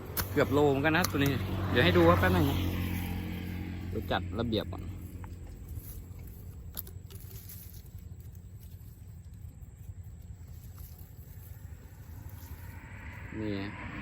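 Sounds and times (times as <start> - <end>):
low steady rumble: 0.0 - 14.0
faint rustling and handling: 4.8 - 12.8.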